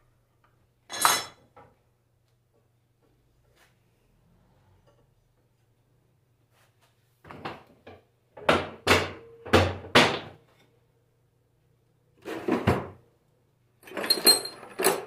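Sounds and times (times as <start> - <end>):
hard objects knocking on workbench: 7.3 - 10.4.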